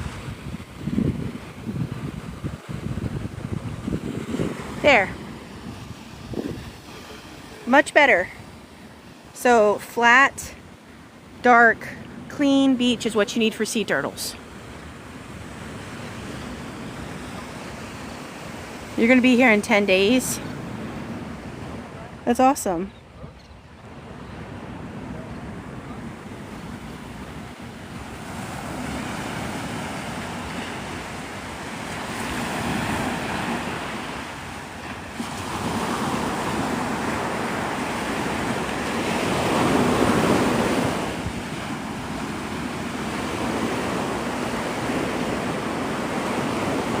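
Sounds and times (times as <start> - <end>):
wind rumbling on microphone: 0.0 - 7.7
surf breaking on beach: 0.0 - 9.8, 24.0 - 47.0.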